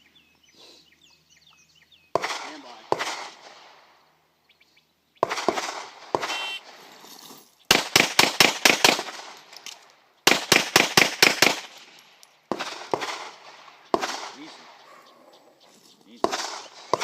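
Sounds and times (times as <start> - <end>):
handgun shots: 5.2 - 6.6, 7.7 - 14.5
shot timer beep: 6.3 - 6.6.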